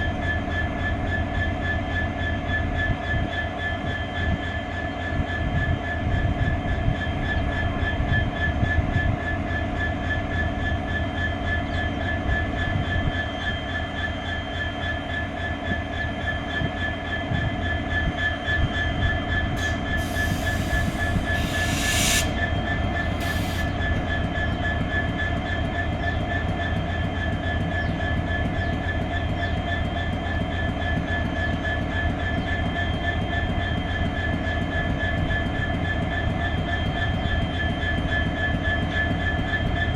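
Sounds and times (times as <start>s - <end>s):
diesel locomotive idling: 18.3s - 36.5s
brief hiss: 19.6s - 23.9s.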